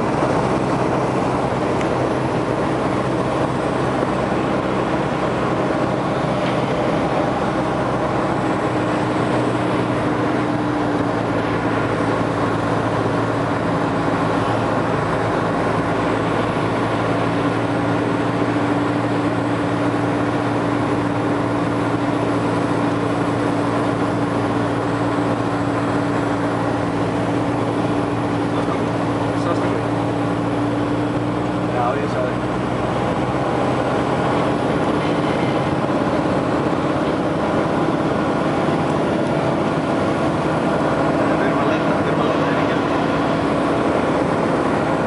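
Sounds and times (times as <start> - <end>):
vehicle engine drone from inside: 0.0 - 45.0.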